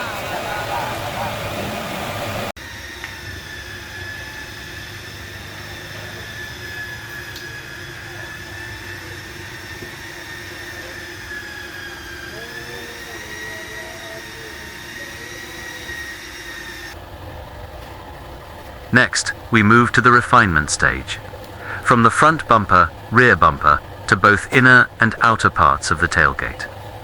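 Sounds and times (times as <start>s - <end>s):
high-pitched machine whine: 0.1s - 23.1s
low hum: 16.9s - 27.0s.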